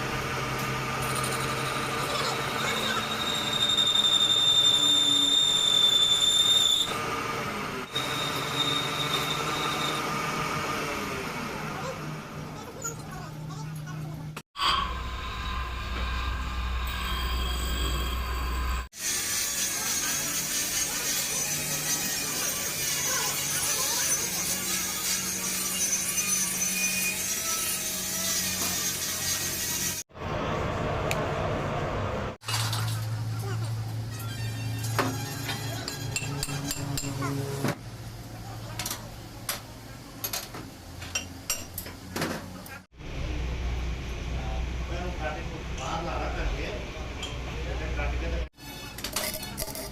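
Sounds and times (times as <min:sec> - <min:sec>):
high-pitched machinery squeal: 0:01.0 - 0:07.0, 0:07.9 - 0:10.3, 0:14.6 - 0:30.0, 0:34.1 - 0:37.6
low hum: 0:14.6 - 0:18.9.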